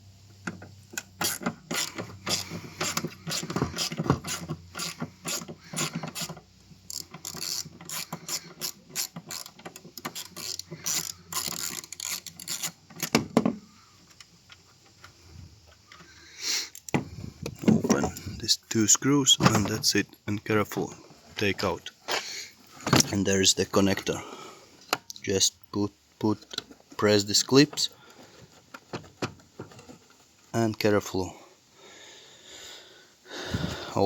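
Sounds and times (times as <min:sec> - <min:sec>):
ratchet wrench clicking: 0:01.0 - 0:13.2.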